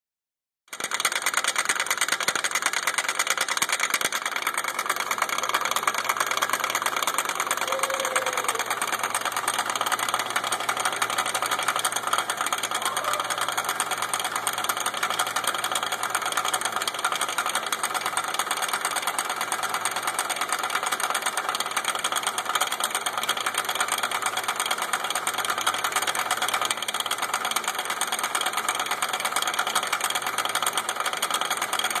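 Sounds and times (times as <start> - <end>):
driveshaft clicking and rattling: 0.7 - 32.0
car engine running: 2.3 - 18.7.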